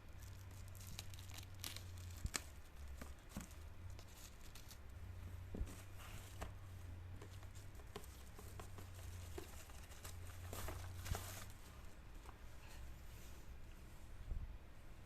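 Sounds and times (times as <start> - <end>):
steady low hum: 0.0 - 15.0
packaging rustling: 7.2 - 12.4.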